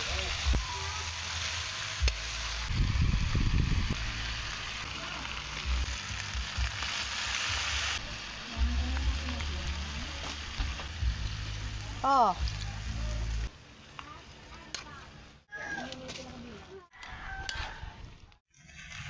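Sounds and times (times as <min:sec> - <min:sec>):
food sizzling in a hot pan: 0:00.0 - 0:14.8.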